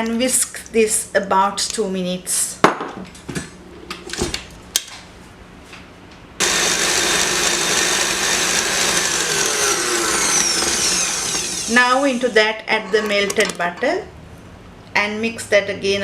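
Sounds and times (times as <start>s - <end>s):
electric mixer whining: 6.4s - 12.5s.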